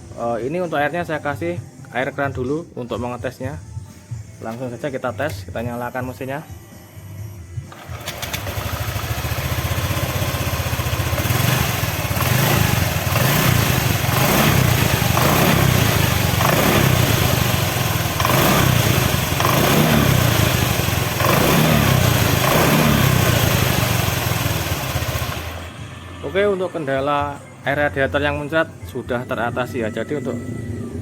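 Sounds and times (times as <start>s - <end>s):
scooter engine revving: 7.7s - 25.9s.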